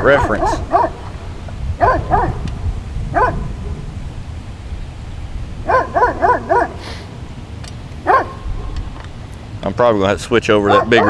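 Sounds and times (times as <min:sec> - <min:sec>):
dog yipping: 0:00.0 - 0:01.1, 0:01.8 - 0:02.5, 0:03.2 - 0:03.8, 0:05.7 - 0:07.0, 0:08.0 - 0:08.8, 0:10.6 - 0:11.0
steady low rumble: 0:00.0 - 0:11.0.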